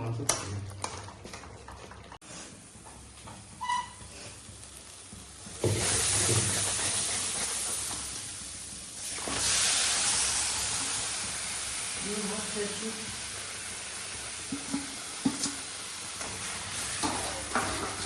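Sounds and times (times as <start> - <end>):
food sizzling in hot oil: 2.6 - 18.0.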